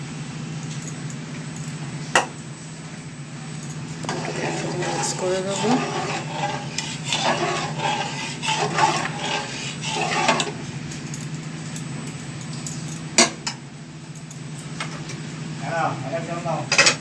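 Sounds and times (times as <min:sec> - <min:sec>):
utensil stirring and scraping pot: 0:03.9 - 0:11.2.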